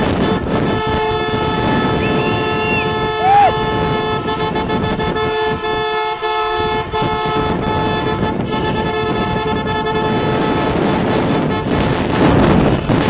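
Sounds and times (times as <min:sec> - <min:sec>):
car horn long note: 0:00.0 - 0:13.0
rushing noise: 0:01.6 - 0:03.9.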